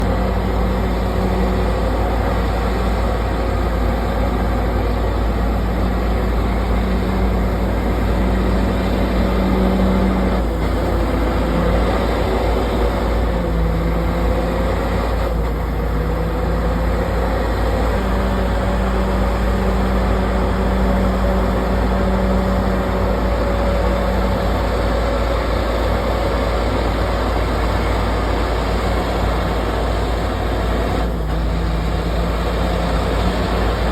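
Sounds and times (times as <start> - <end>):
bulldozer diesel engine rumbling: 0.0 - 33.9.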